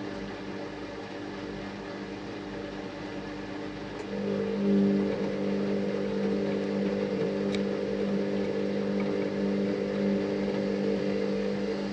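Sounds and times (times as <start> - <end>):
washing machine running: 0.0 - 11.9
faint tick: 6.8 - 7.7.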